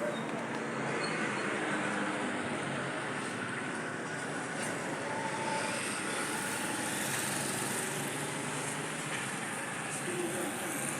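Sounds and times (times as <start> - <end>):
street traffic: 0.0 - 10.9.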